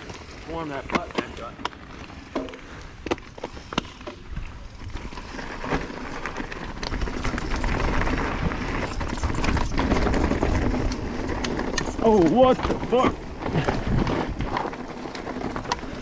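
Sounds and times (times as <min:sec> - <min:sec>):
bike clicks and rattles: 0:00.0 - 0:16.0
bike tyres crunching over rock: 0:00.0 - 0:16.0
wind rumbling on microphone: 0:04.0 - 0:16.0.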